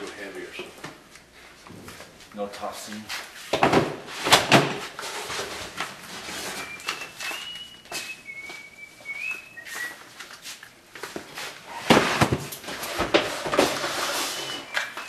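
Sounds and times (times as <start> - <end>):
person whistling a tune: 6.6 - 10.1.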